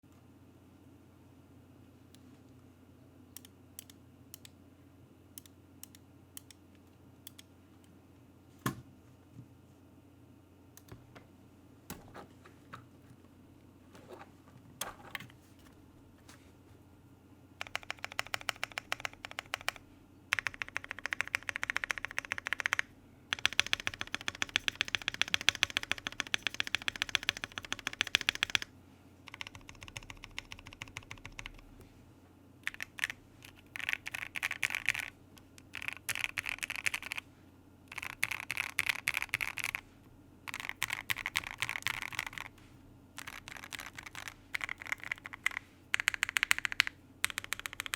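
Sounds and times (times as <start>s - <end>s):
mechanical keyboard typing: 17.6s - 28.7s, 29.3s - 31.7s, 32.6s - 37.2s, 37.9s - 39.8s, 40.5s - 42.6s, 43.2s - 47.9s.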